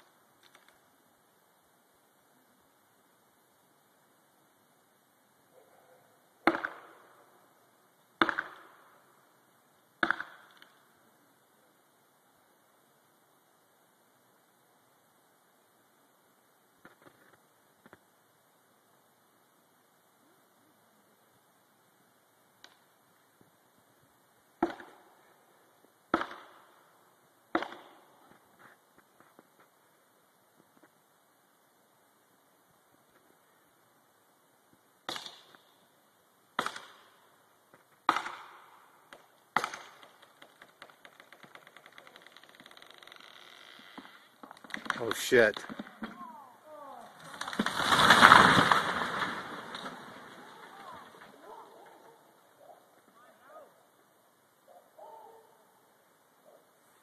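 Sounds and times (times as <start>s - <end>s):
axe chopping into tree: 6.4s - 6.9s, 8.2s - 8.7s, 10.0s - 10.6s, 24.6s - 25.0s, 26.1s - 26.6s, 27.5s - 28.0s, 36.6s - 37.0s, 38.1s - 38.6s, 39.6s - 40.3s.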